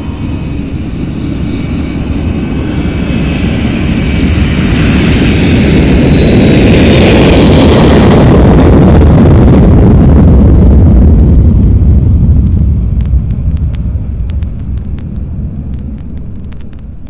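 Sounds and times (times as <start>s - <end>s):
jet engines roaring: 0.0s - 17.0s
vinyl record clicks: 12.4s - 17.0s.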